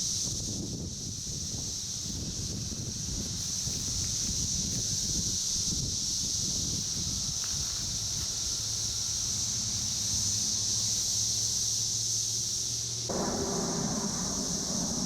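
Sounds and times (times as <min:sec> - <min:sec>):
cicadas chorus: 0:00.0 - 0:15.0.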